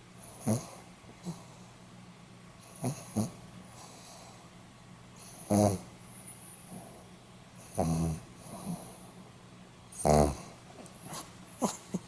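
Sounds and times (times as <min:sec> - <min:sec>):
dog snoring: 0:00.2 - 0:01.4, 0:02.6 - 0:03.4, 0:05.2 - 0:05.9, 0:07.6 - 0:09.0, 0:09.9 - 0:11.8.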